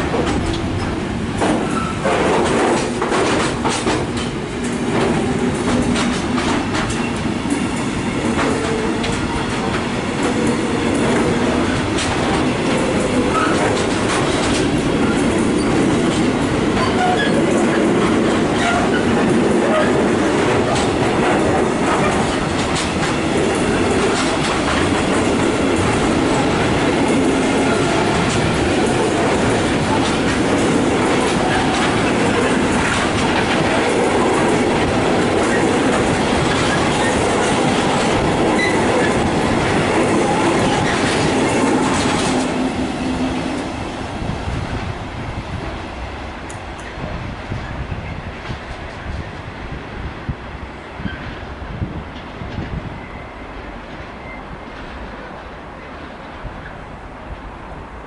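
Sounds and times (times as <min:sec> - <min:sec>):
train wheels clicking over rail joints: 0:00.0 - 0:43.7
rumble of wheels on rail: 0:00.0 - 0:58.0.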